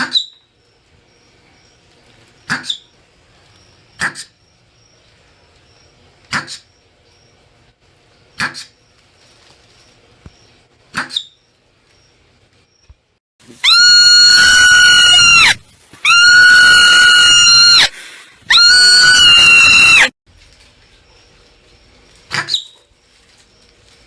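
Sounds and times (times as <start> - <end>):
marmot chirp: 0.0 - 0.5
marmot screaming calls: 13.6 - 17.9, 18.5 - 20.1.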